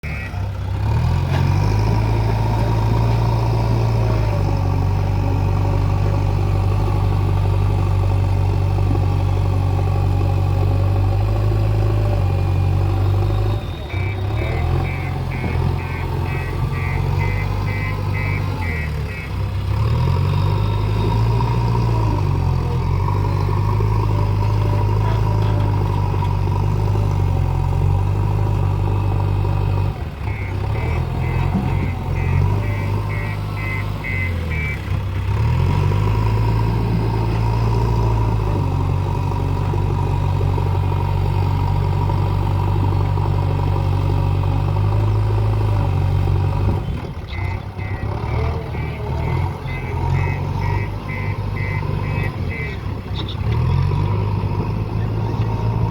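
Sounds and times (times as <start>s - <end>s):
diesel engine working under load: 0.0s - 55.9s
reverse alarm beeping: 13.2s - 19.3s, 30.3s - 34.9s, 47.4s - 52.7s.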